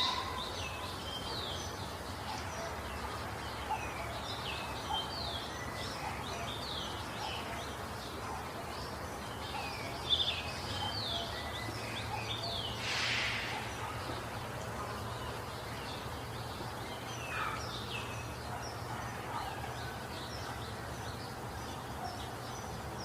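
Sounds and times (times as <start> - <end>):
background hiss: 0.0 - 23.0
birds chirping: 0.0 - 23.0
brief rush of noise: 12.8 - 13.8.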